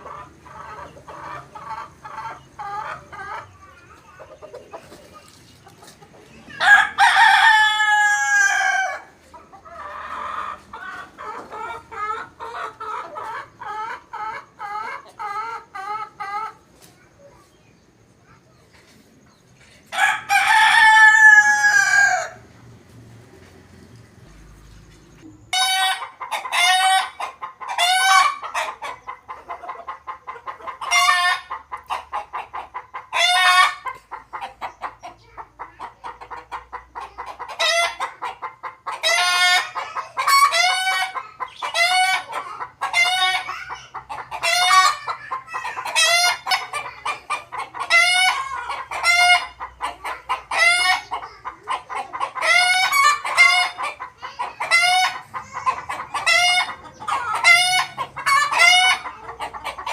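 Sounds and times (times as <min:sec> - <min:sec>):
chickens clucking: 0:00.0 - 0:59.9
rooster crowing: 0:06.5 - 0:09.1, 0:19.9 - 0:22.4
chickens short loud calls: 0:25.6 - 0:59.9.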